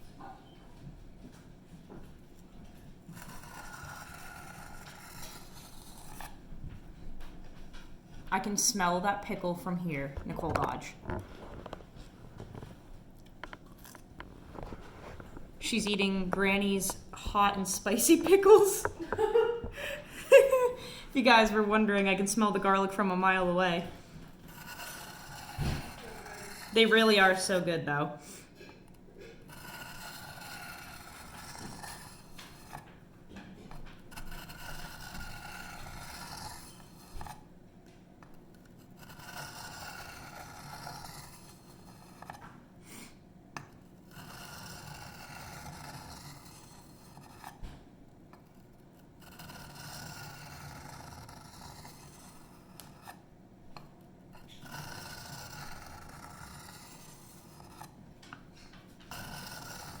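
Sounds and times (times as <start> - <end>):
blade scraping on sharpening stone: 3.2 - 6.2, 29.5 - 32.3, 39.0 - 41.7, 44.2 - 47.5, 49.2 - 53.1, 54.5 - 57.9, 59.1 - 60.0.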